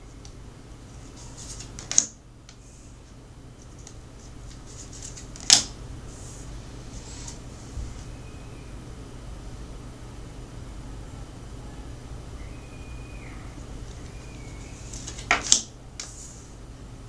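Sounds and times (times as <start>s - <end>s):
cards shuffling: 0.9s - 2.2s, 3.6s - 7.4s, 13.9s - 16.5s
card snaps: 1.2s - 2.2s, 3.8s - 5.8s, 14.8s - 16.2s.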